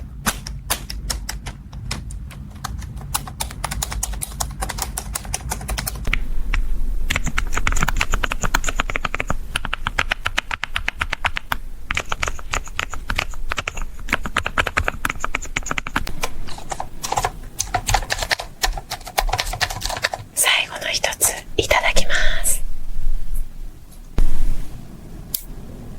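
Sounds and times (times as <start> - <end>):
typing on computer keyboard: 0.2 - 6.2, 7.1 - 20.3.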